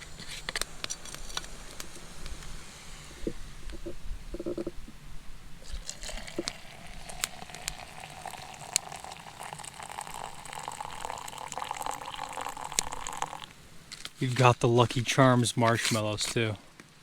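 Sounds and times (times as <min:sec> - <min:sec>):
water pouring into a container: 0:05.6 - 0:13.6.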